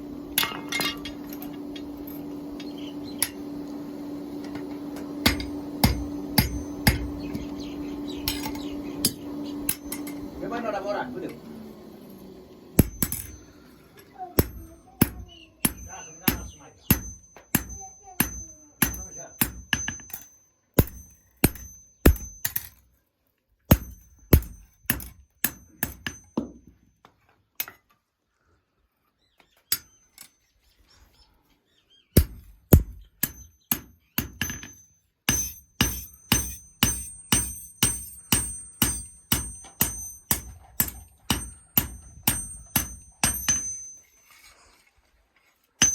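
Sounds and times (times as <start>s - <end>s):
hammer striking metal on anvil: 0.3s - 3.4s, 4.4s - 7.6s, 8.2s - 10.4s, 12.8s - 13.6s, 14.4s - 22.8s, 23.7s - 26.7s, 32.2s - 44.0s.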